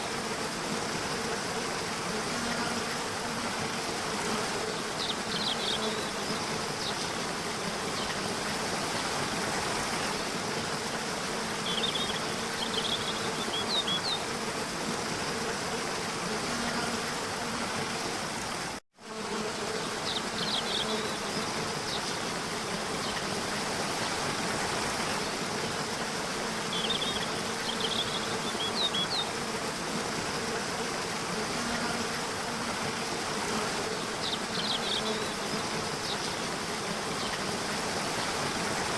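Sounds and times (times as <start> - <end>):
insect buzzing: 0.0 - 38.9.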